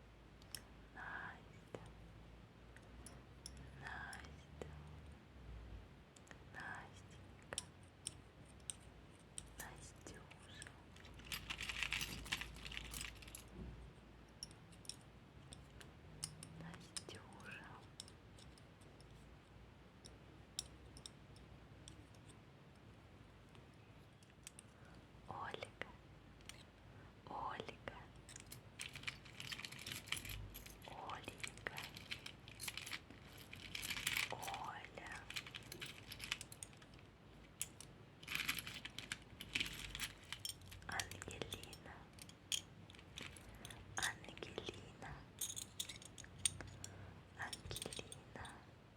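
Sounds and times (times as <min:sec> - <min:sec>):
jewellery jingling and clinking: 0:10.1 - 0:13.6, 0:27.9 - 0:48.6.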